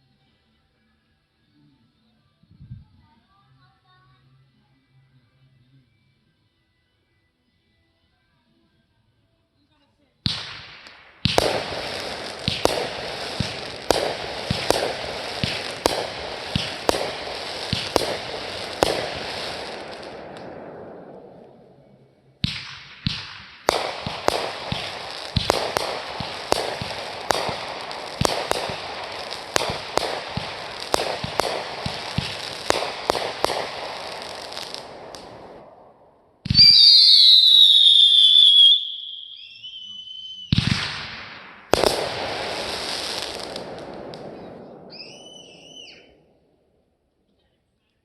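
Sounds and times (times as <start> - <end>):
firework crackling hiss: 10.3 - 35.8, 36.5 - 46.0
firework bangs: 10.3 - 46.2.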